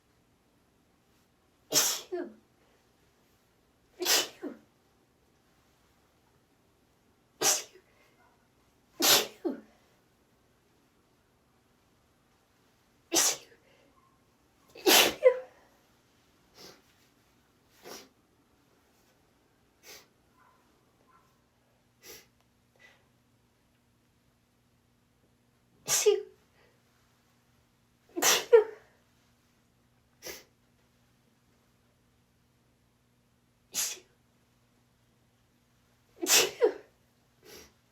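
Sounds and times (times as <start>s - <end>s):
woman sneezing: 1.7s - 2.4s, 4.0s - 4.7s, 7.4s - 7.8s, 9.0s - 9.8s, 13.1s - 13.6s, 14.8s - 15.7s, 25.9s - 26.4s, 28.2s - 28.9s, 33.7s - 34.1s, 36.2s - 37.7s.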